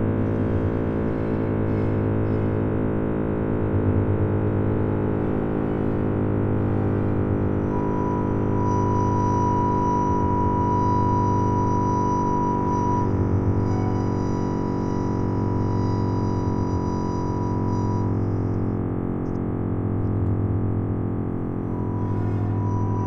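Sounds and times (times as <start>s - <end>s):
low hum: 0.0s - 23.0s
synthesizer drone: 0.0s - 23.0s
high tone: 6.9s - 18.8s, 21.7s - 23.0s.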